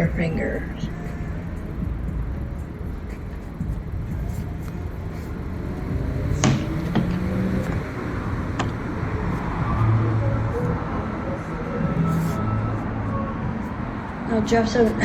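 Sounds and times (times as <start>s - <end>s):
passing cars rumble: 0.0s - 15.0s.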